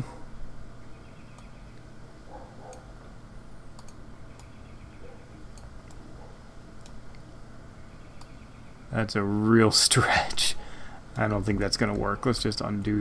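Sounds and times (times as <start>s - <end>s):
low electrical hum: 0.0s - 13.0s
computer mouse clicks: 3.7s - 4.6s, 5.5s - 6.0s, 6.8s - 7.3s.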